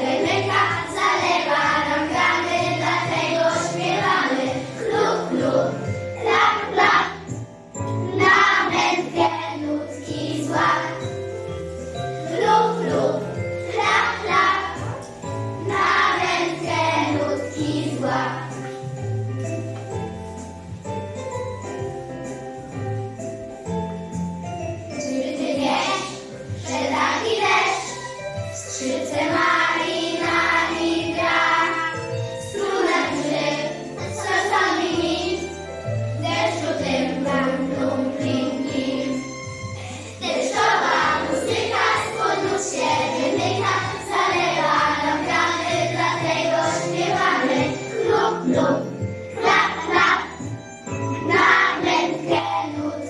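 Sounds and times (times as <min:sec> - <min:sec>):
group of voices singing: 0:00.0 - 0:07.1, 0:32.6 - 0:35.4, 0:40.2 - 0:48.8
instrumental backing track: 0:00.0 - 0:53.0
jingling bells: 0:00.0 - 0:53.0.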